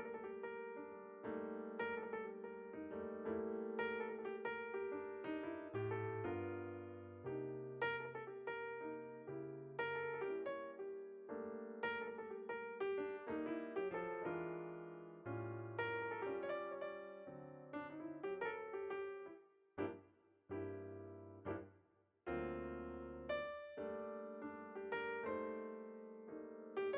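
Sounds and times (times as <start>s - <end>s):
solo piano music: 0.0s - 21.7s, 22.3s - 26.9s.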